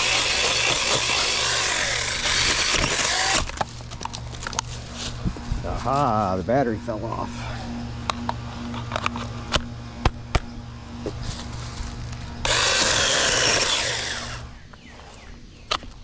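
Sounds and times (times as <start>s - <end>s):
small electric saw motor whirring: 0.0s - 5.2s, 7.7s - 15.2s
steady low hum: 0.0s - 16.0s.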